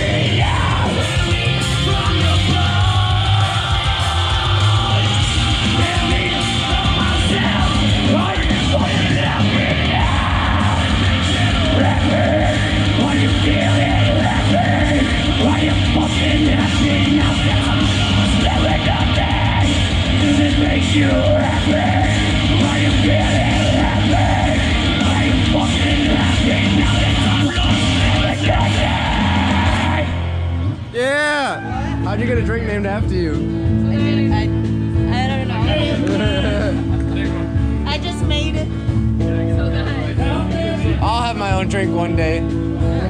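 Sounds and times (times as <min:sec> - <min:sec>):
person singing: 0:00.0 - 0:30.2
loud rock band music: 0:00.0 - 0:43.0.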